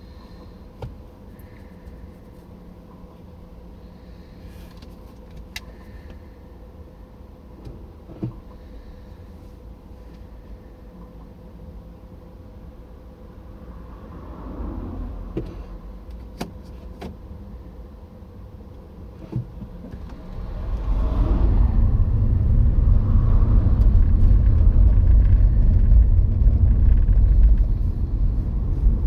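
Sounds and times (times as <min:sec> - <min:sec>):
road rumble: 0:00.0 - 0:29.0
car engine: 0:18.6 - 0:29.0.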